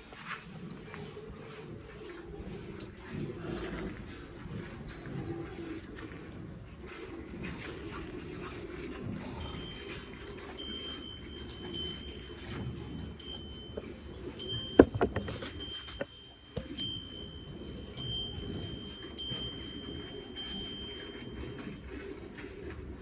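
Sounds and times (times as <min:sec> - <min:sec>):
small bell ringing: 0:10.6 - 0:12.4, 0:13.0 - 0:21.2.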